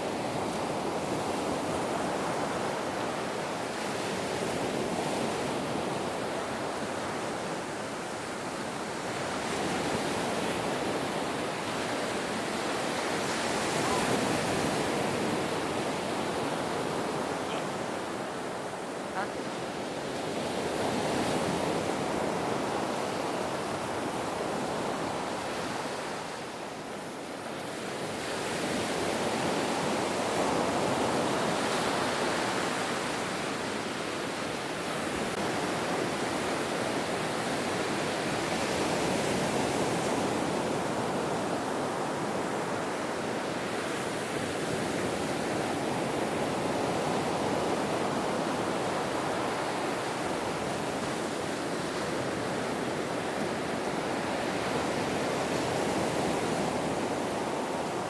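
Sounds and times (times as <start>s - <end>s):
ocean waves breaking: 0.0s - 26.4s.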